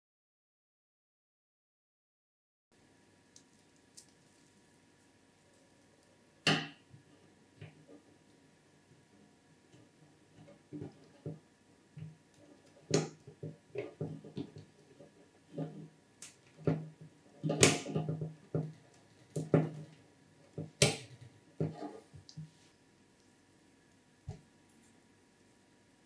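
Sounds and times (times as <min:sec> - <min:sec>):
computer hardware clicks and knocks: 0:16.4 - 0:20.0.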